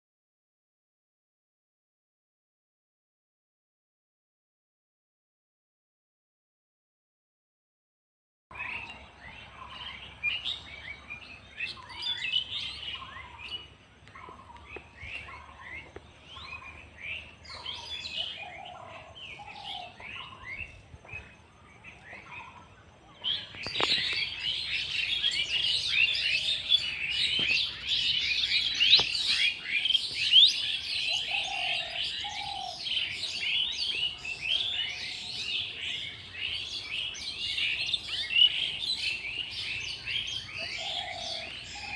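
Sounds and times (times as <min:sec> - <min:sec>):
lower paired bird calls: 0:08.5 - 0:41.9
small birds chirping: 0:08.5 - 0:41.9.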